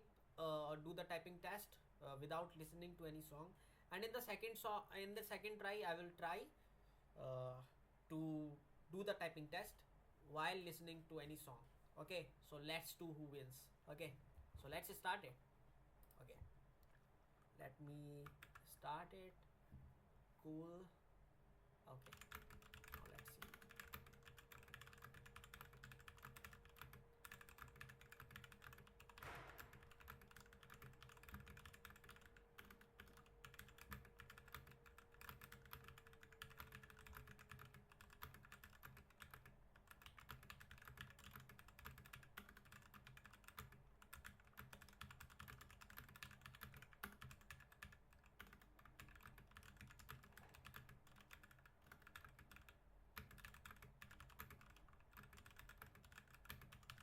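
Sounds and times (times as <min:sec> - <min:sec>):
faint steady hum: 0:00.0 - 0:57.0
typing on computer keyboard: 0:18.2 - 0:18.7, 0:22.0 - 0:57.0.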